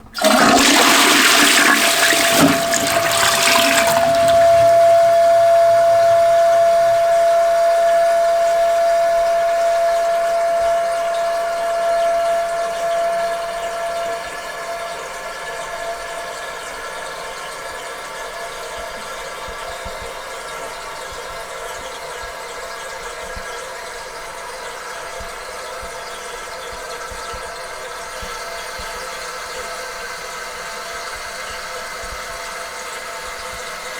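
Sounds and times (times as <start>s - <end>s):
toilet tank refilling hiss: 0.0s - 15.8s
toilet flushing: 0.0s - 17.9s
whistling tone: 0.2s - 16.1s.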